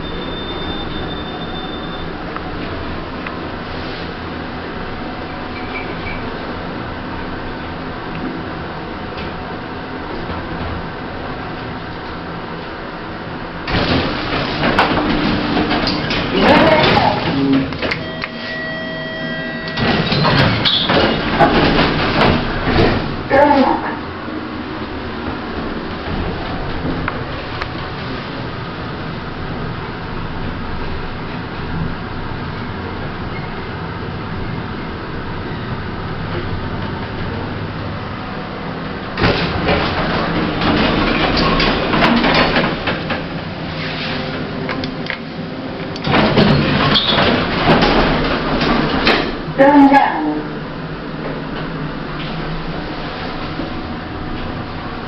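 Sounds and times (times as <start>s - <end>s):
lift motor whine: 0.0s - 23.3s
lift rumbling and clatter: 0.0s - 55.0s.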